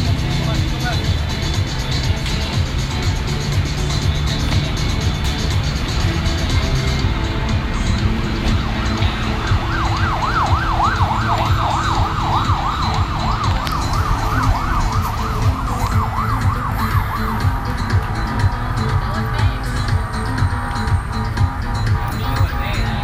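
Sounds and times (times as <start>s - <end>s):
background music with steady beat: 0.0s - 23.0s
siren yelping: 7.6s - 22.6s.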